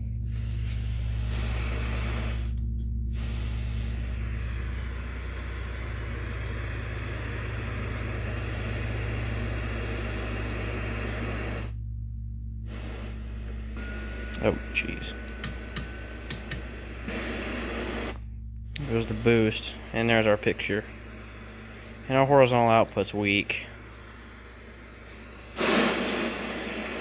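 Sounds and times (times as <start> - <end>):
low mains hum: 0.0 - 27.0
television static hiss: 13.8 - 27.0.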